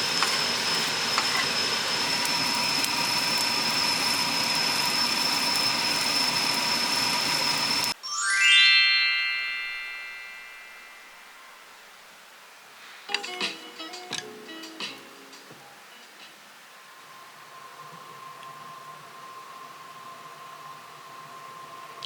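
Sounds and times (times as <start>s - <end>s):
food sizzling in a pan: 0.0s - 8.0s
rising chime notes: 8.0s - 11.8s.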